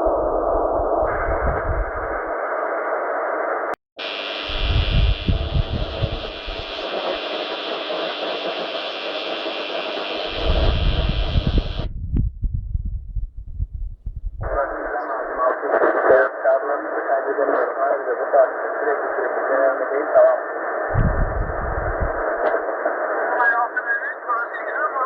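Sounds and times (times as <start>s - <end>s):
uneven low rumble: 0.0s - 2.4s, 4.4s - 6.9s, 10.2s - 15.0s, 20.9s - 22.5s
shortwave radio static hiss: 0.0s - 11.9s, 14.4s - 25.0s.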